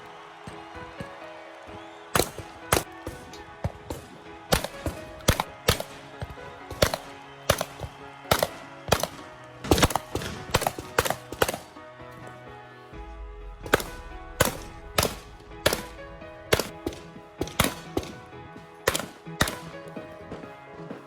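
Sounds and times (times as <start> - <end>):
background music: 0.0 - 21.0
shotgun shots: 13.4 - 18.2, 18.8 - 20.0.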